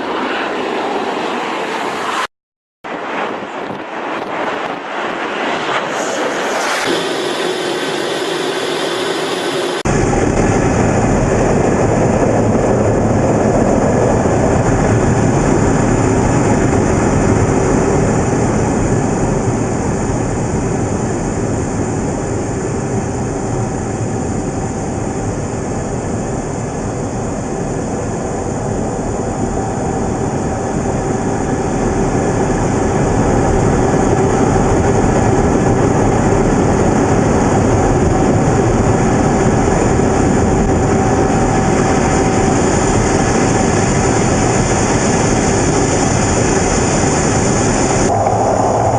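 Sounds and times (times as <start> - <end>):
loud flight deck roar: 0.0 - 48.9.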